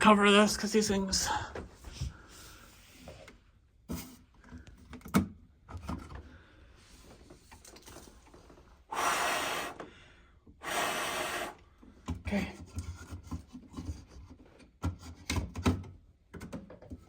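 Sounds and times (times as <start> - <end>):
breathy rush of air: 8.9 - 11.6
plastic clicks and knocks: 14.8 - 17.0.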